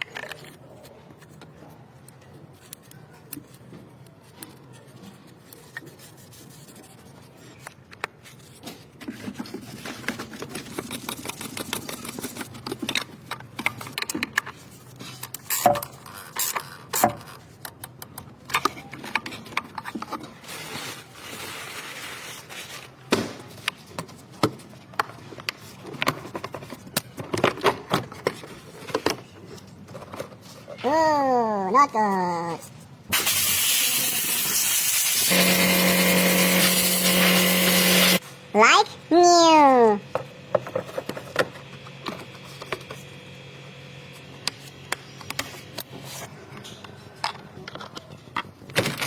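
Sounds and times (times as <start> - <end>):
tools and parts clicking and knocking: 0.0 - 0.6, 9.0 - 20.3, 23.6 - 30.4
rustling noise: 20.2 - 24.8.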